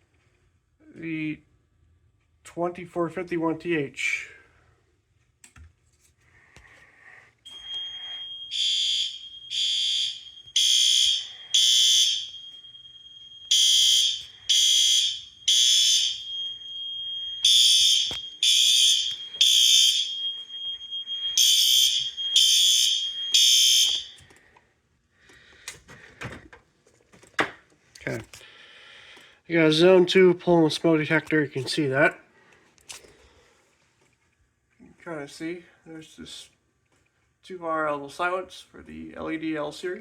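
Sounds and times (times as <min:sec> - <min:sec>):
fire alarm horn blasts: 0:07.5 - 0:24.3
steady high-pitched tone: 0:07.5 - 0:24.3.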